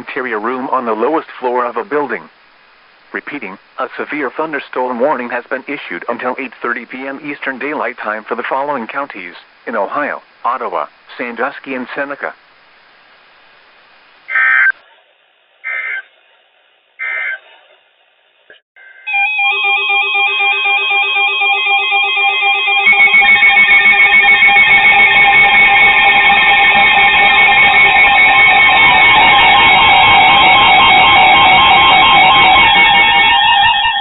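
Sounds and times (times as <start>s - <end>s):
bright electronic tones: 19.1s - 34.0s
guitar music: 20.4s - 34.0s
raspy digital data bursts: 22.0s - 34.0s.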